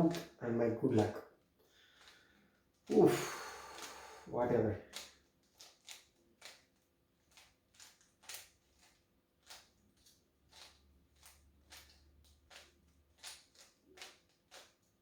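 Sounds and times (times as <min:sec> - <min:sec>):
puzzle cube plastic clicks: 0:04.8 - 0:15.0.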